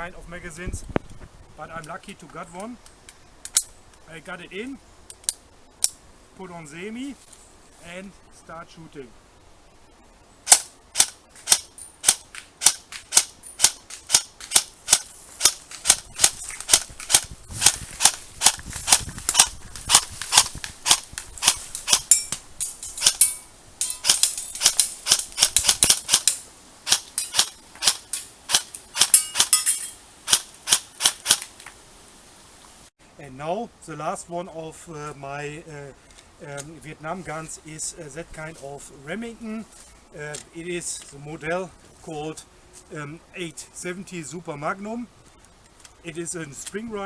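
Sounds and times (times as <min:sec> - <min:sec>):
airsoft rifle shots: 0:10.5 - 0:22.1.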